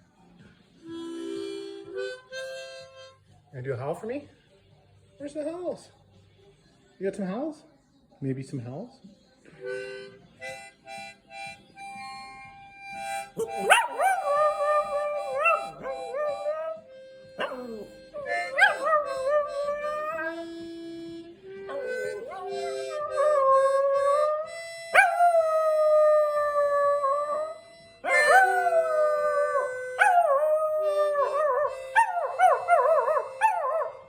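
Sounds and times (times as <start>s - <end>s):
held musical notes: 10.9s - 34.0s
dog howling: 13.4s - 16.8s, 17.4s - 20.6s, 21.6s - 34.0s.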